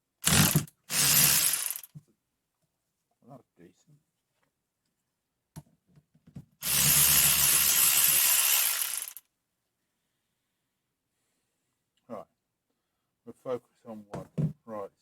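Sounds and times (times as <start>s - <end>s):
electric ratchet whirring: 0.2s - 1.9s, 6.6s - 9.2s.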